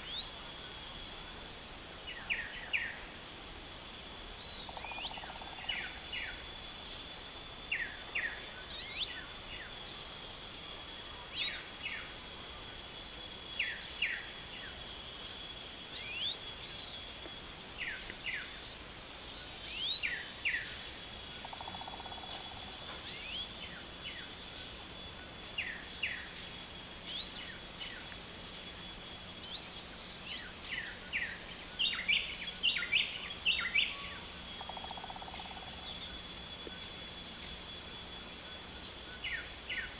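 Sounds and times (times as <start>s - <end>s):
high insect drone: 0.0s - 39.9s
birds singing upward-sweeping phrases: 16.0s - 16.4s, 23.1s - 23.5s, 27.1s - 27.6s.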